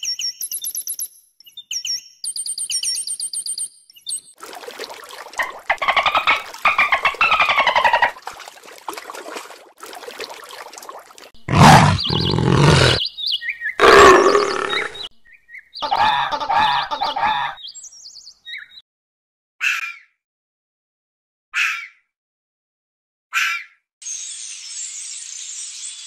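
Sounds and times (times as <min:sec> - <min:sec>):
fast pulsing animal call: 0:05.8 - 0:08.2, 0:11.5 - 0:13.0
loud deep animal calls: 0:11.5 - 0:13.0, 0:13.8 - 0:15.1
pitched animal calls: 0:11.5 - 0:13.0, 0:13.8 - 0:15.1.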